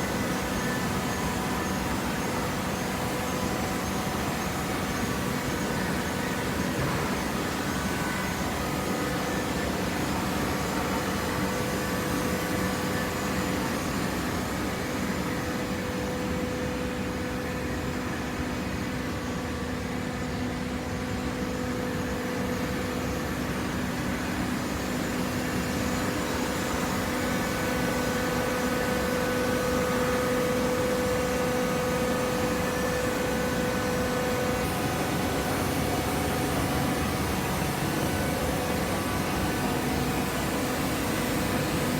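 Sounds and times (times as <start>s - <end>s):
hydraulic pump and motor humming: 0.0s - 41.9s
mechanical whine: 0.0s - 41.9s.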